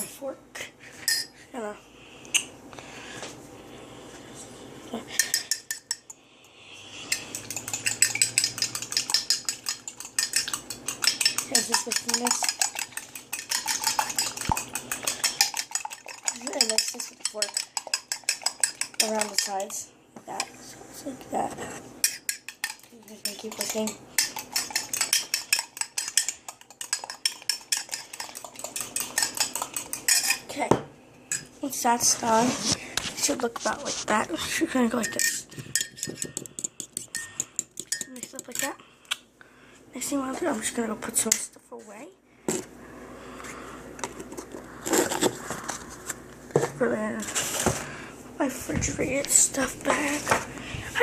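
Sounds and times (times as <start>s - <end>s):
fork whisking in a mug: 5.1s - 6.2s, 6.8s - 20.5s, 22.0s - 30.6s, 31.3s - 38.8s.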